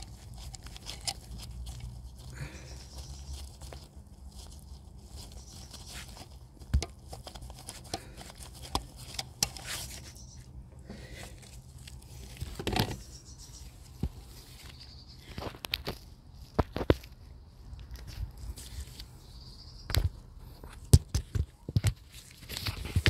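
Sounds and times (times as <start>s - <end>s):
tools handling engine parts: 0.0s - 2.3s, 4.8s - 13.1s.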